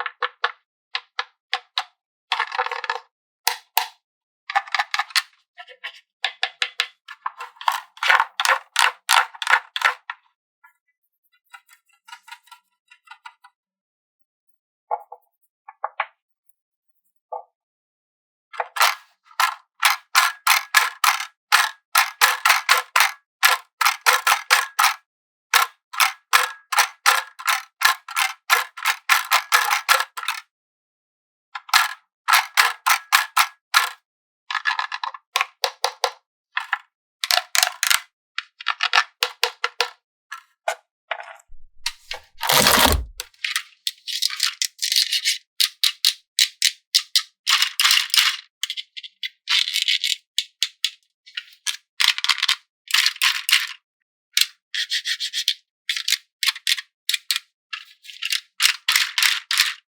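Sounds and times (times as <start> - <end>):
plastic toy parts clicking: 41.5 - 43.2
scraping and rustling: 41.5 - 43.2.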